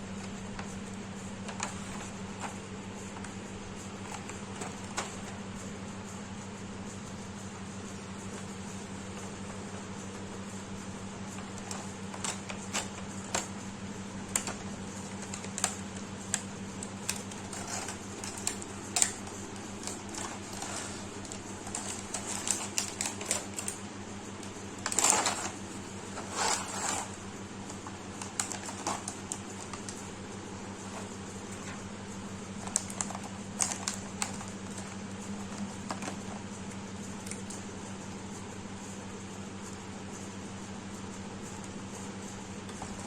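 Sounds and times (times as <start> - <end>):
steady low hum: 0.0 - 43.0
crinkly packaging rustles: 0.2 - 5.7, 11.2 - 36.5
packaging clicks and taps: 14.3 - 23.8, 24.4 - 30.0, 32.6 - 36.2.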